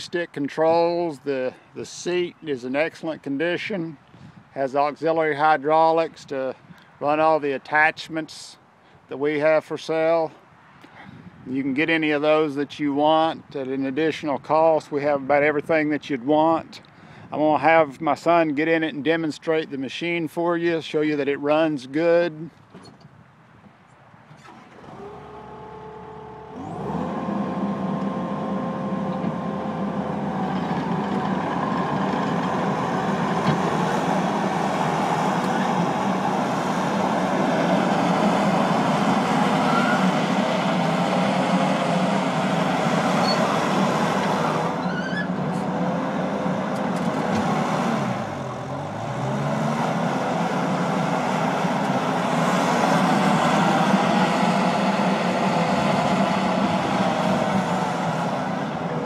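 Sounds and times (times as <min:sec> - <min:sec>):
diesel engine starting and running: 0:24.2 - 0:59.0.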